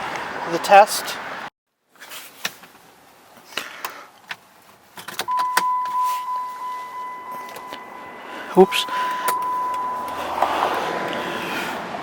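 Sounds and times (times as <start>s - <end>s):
car warning chime: 5.3s - 11.1s.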